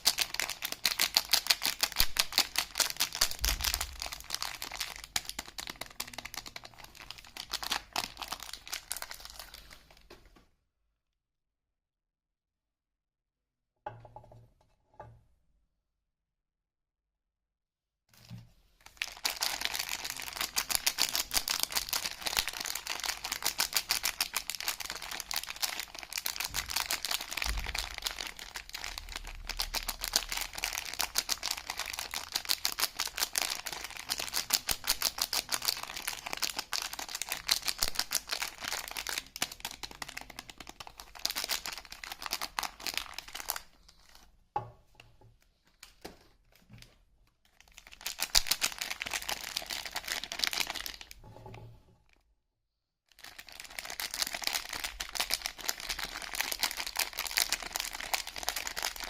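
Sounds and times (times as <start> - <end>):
packaging crinkling and tearing: 0.0 - 10.1, 18.8 - 44.2, 47.4 - 51.2, 53.1 - 59.0.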